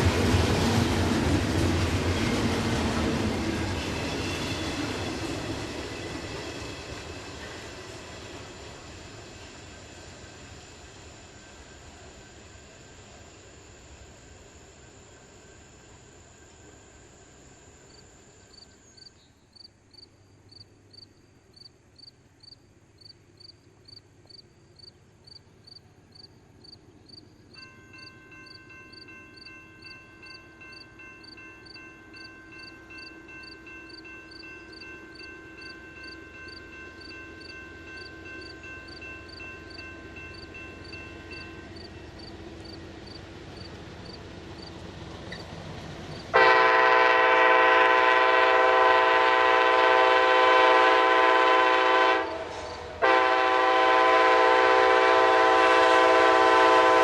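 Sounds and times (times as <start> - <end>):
crossing bell ticking: 27.6 - 42.3
diesel locomotive rumble: 33.3 - 57.0.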